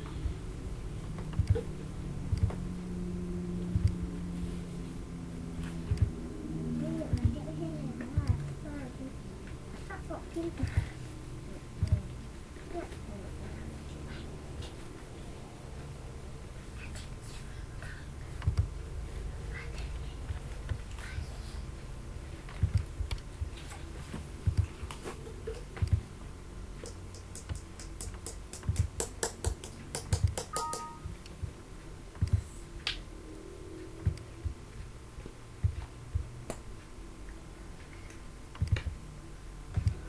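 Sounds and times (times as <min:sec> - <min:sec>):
low steady hum: 0:00.0 - 0:40.0
mouse and keyboard clicks: 0:26.8 - 0:31.1
short two-tone beep: 0:30.6 - 0:31.1.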